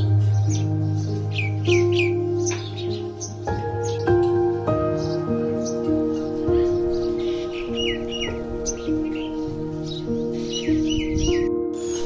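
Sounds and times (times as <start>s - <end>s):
gentle sustained background music: 0.0s - 12.0s.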